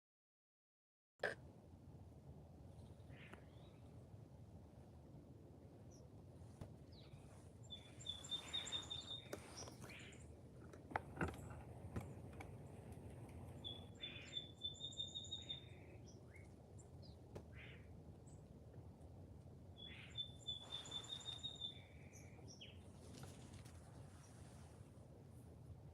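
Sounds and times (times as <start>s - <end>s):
short harsh bird calls: 7.7s - 10.2s, 19.8s - 22.6s
rapid high bird calls: 7.7s - 10.3s, 13.6s - 16.4s, 19.8s - 22.8s.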